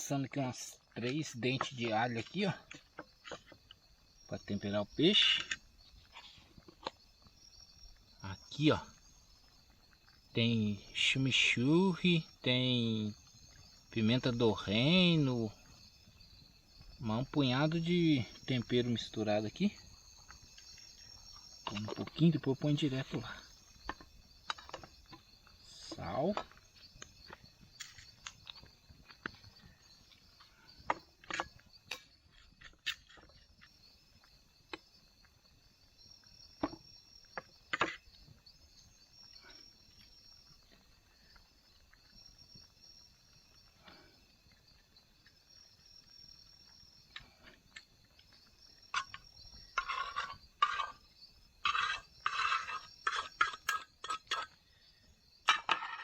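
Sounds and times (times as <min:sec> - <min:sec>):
rustling and scraping: 0:00.0 - 0:03.9, 0:05.1 - 0:07.4, 0:17.2 - 0:33.8, 0:47.1 - 0:54.6, 0:55.4 - 0:56.0
crickets trilling: 0:00.0 - 0:56.0.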